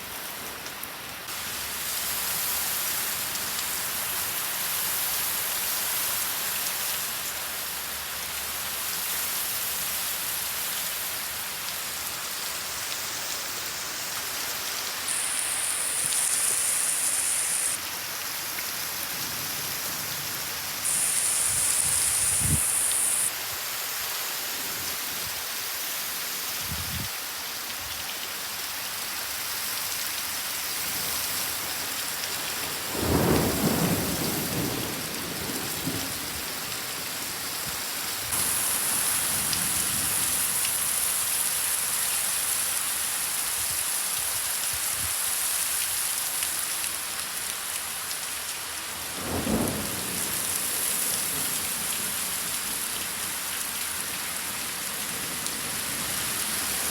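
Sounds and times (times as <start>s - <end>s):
heavy rain pouring: 1.0s - 26.5s, 27.1s - 56.9s
thunder rumbling: 49.2s - 52.0s.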